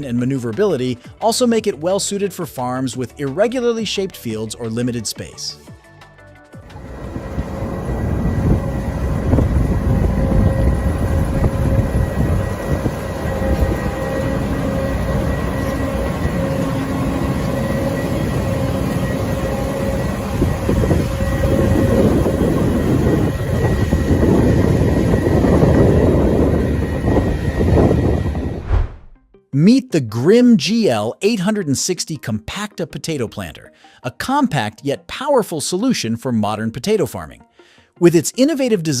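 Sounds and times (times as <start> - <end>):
heavy farm machinery running: 6.6 - 28.7.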